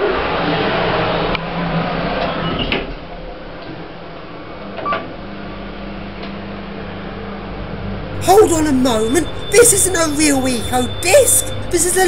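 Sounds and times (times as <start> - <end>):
lift humming: 8.2 - 12.0
brief lift tone: 8.3 - 12.0.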